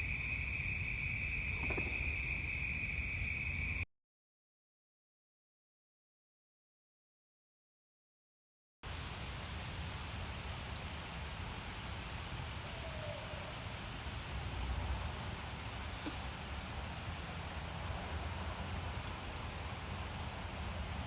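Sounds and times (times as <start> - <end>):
faint animal call: 0.0 - 3.8, 12.6 - 13.7, 15.8 - 16.4
steady hiss: 0.0 - 3.8.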